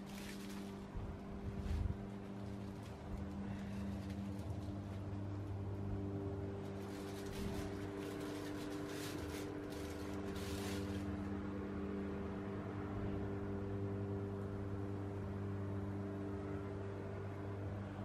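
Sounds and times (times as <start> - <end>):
irregular crackling hiss: 0.0 - 11.6
small fan motor humming: 0.0 - 18.0.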